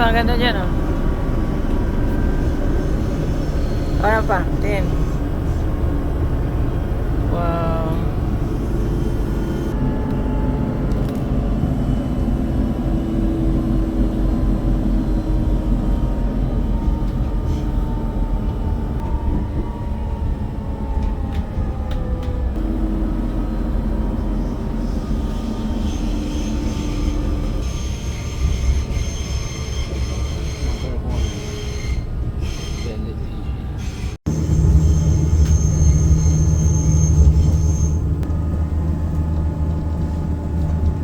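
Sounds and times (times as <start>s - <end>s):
train wheels rumbling on rails: 0.0s - 41.0s
wheels squealing on rails: 1.7s - 5.8s, 23.2s - 38.5s.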